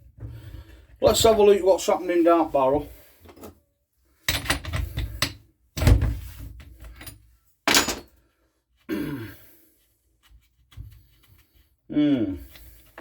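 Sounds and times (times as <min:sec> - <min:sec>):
tools clunking and rattling: 0:04.3 - 0:08.2.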